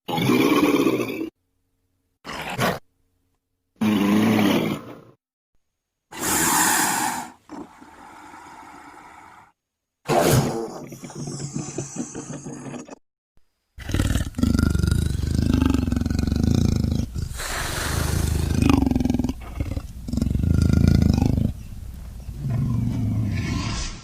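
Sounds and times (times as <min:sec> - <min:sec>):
deep creature roars: 0:13.8 - 0:21.6.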